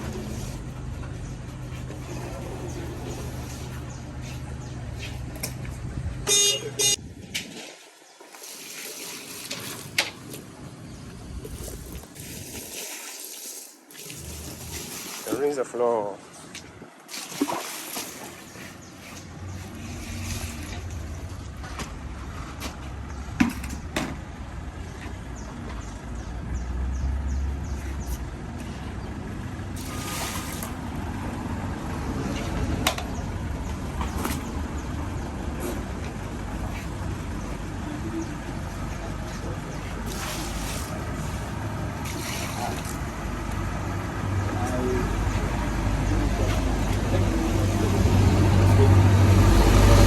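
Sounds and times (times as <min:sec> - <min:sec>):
machine rumbling: 0:00.0 - 0:07.5.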